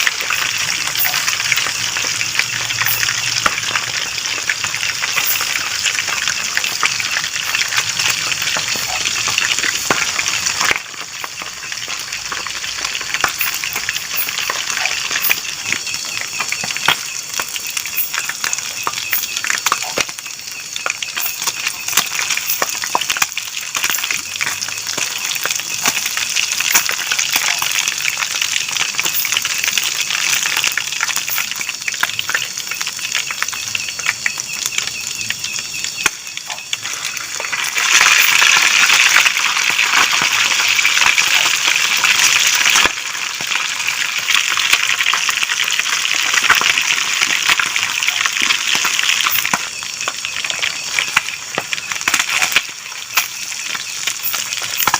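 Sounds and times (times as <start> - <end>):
fish sizzling in hot oil: 0.0 - 54.9
oil spitting crackles: 36.0 - 54.9.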